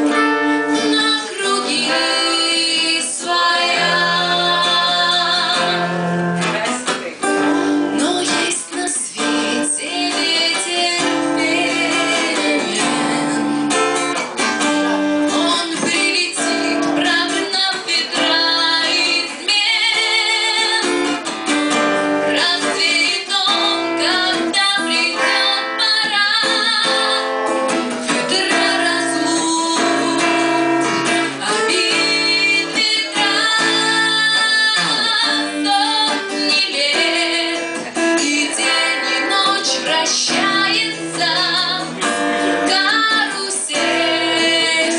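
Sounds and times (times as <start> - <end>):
strummed acoustic guitar: 0.0 - 44.9
woman singing: 0.0 - 44.9.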